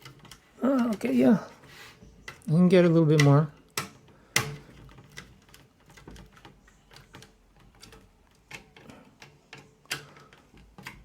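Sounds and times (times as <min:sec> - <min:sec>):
screwdriver clicking and tapping: 0:03.1 - 0:11.0.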